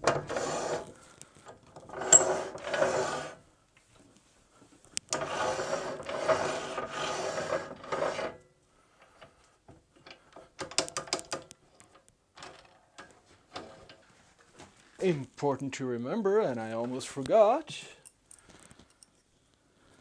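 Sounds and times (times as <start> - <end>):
metal parts scraping: 1.9 - 3.0.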